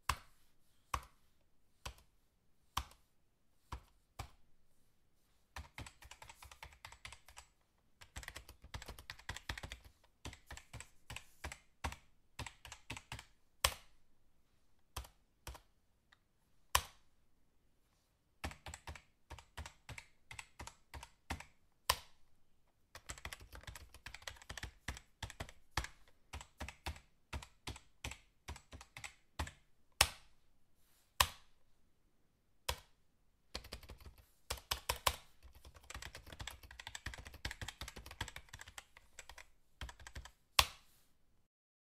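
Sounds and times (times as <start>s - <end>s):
fast typing on keyboard: 5.6s - 13.3s, 18.4s - 21.6s, 22.9s - 29.7s, 33.5s - 40.4s.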